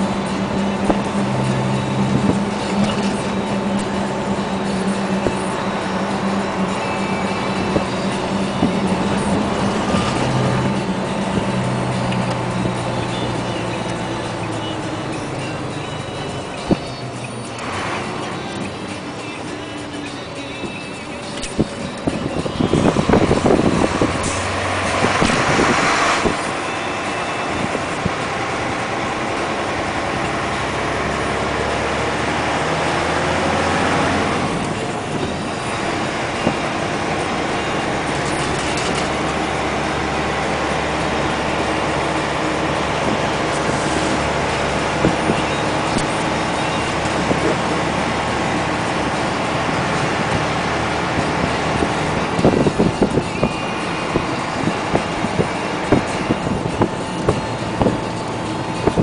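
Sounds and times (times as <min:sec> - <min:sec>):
truck diesel engine pulling hard: 0:00.0 - 0:59.0.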